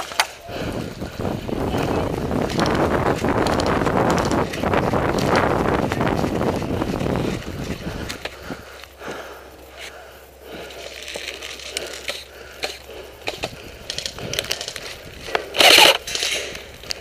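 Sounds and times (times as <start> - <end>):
scuffing footsteps: 0.0 - 9.3
gear clicking: 0.0 - 17.0.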